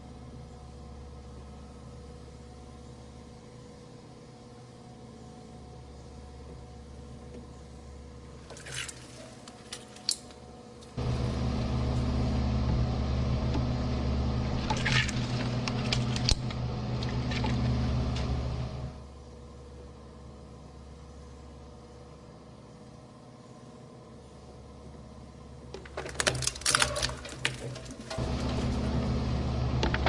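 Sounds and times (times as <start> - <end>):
electric shredder motor humming: 11.0 - 19.0, 27.2 - 30.0
crackling snaps of crushed toy: 25.8 - 28.2.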